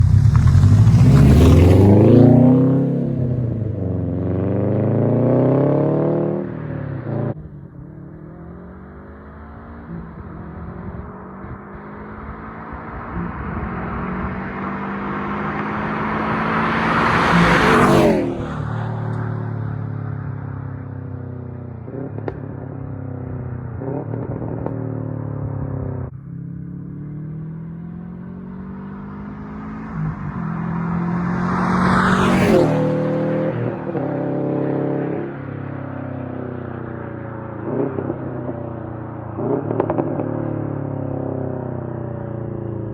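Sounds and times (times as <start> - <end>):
car engine accelerating: 0.0 - 36.2.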